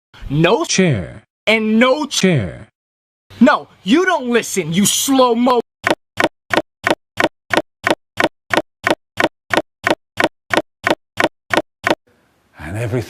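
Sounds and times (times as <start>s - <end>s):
fast ticking clicks: 5.8s - 12.0s.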